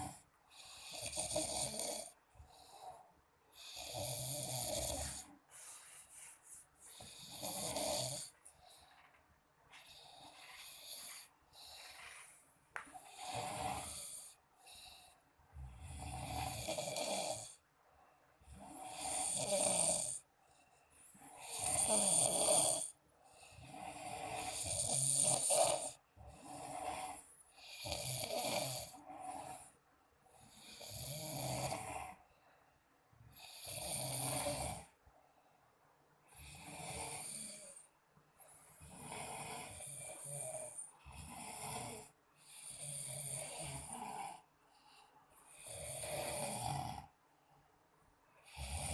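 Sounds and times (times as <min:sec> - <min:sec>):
people snoring loudly: 0:00.0 - 0:02.2, 0:03.6 - 0:05.3, 0:07.0 - 0:08.3, 0:13.0 - 0:14.8, 0:15.6 - 0:17.6, 0:18.5 - 0:20.2, 0:21.2 - 0:23.0, 0:23.6 - 0:29.6, 0:30.5 - 0:32.2, 0:38.9 - 0:44.4, 0:45.5 - 0:47.1, 0:48.5 - 0:48.9.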